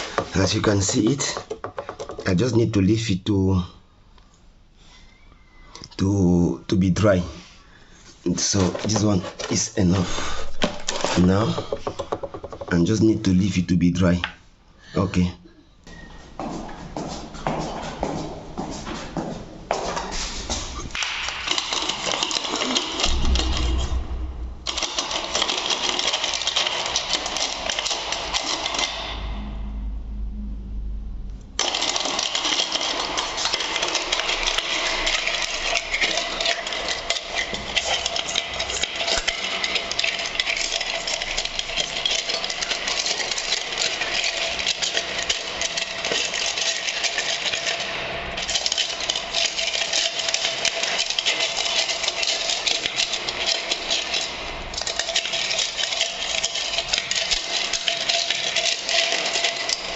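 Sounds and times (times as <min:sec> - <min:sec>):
wire brush scraping metal: 0:31.6 - 0:59.9.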